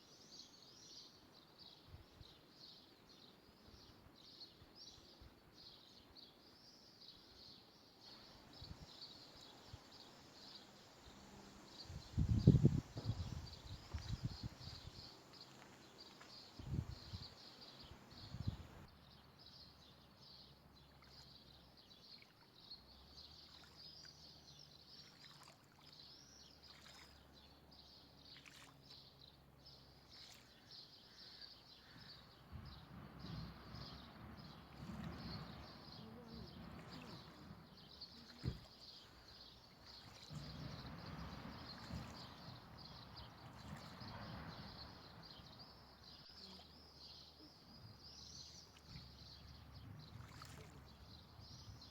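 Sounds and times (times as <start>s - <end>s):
faint birds chirping: 0.0s - 51.9s.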